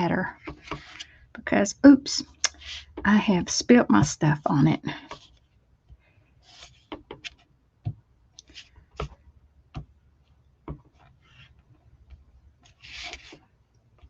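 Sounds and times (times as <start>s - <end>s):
soft rustles of handling: 4.9s - 7.5s, 8.4s - 9.3s, 10.2s - 14.0s.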